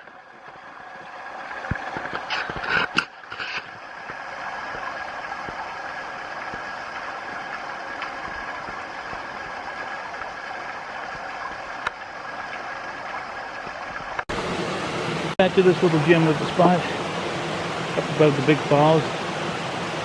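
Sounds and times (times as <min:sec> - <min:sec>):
waterfall rushing: 0:14.3 - 0:20.0.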